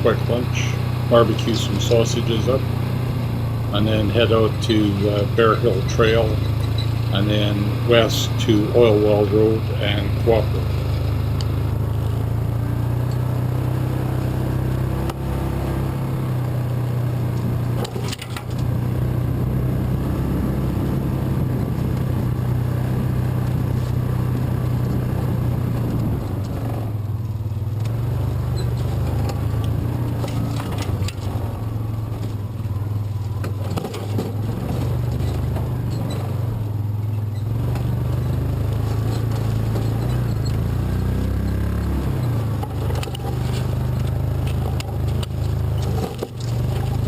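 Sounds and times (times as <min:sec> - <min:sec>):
vehicle engine running: 0:00.0 - 0:47.0.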